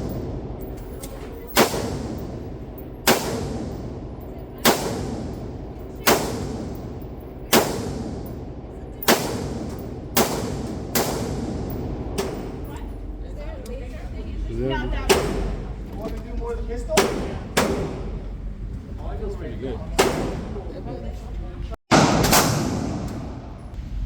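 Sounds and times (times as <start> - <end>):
gunshots with echoing decay: 1.5 - 4.0, 4.6 - 12.7, 15.1 - 15.9, 17.0 - 18.2, 21.9 - 23.7.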